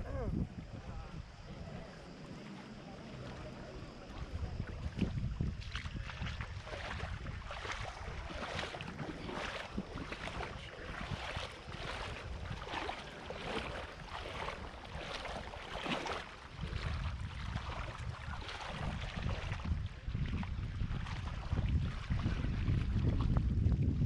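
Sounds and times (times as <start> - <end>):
wind buffeting microphone: 0.0 - 24.0
walking footsteps: 4.8 - 16.3.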